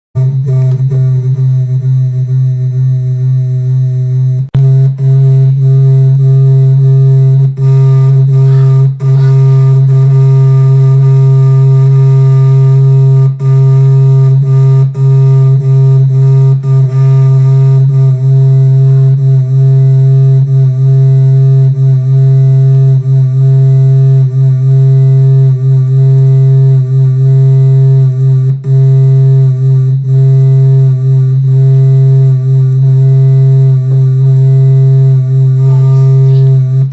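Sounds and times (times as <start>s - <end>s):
speakers low drone: 0.2s - 3.6s, 4.6s - 13.9s, 33.8s - 36.9s.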